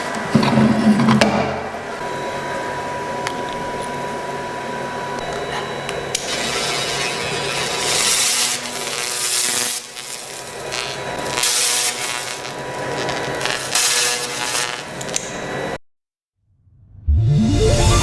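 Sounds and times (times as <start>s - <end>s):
laser cleaning crackling hiss: 6.0s - 15.5s.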